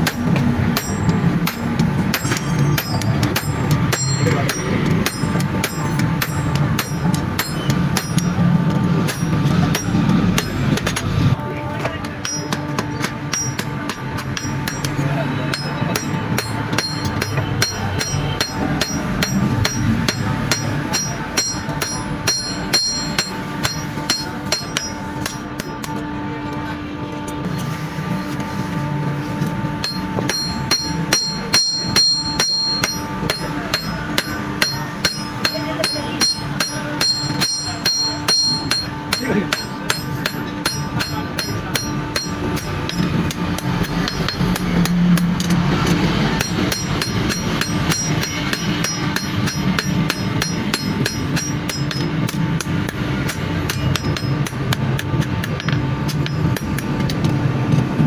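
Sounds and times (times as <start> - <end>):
hammer striking metal on anvil: 0.0 - 26.2, 27.2 - 58.0.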